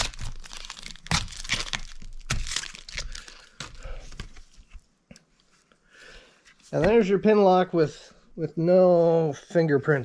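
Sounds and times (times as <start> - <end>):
sharp plastic cracks: 0.0 - 4.4.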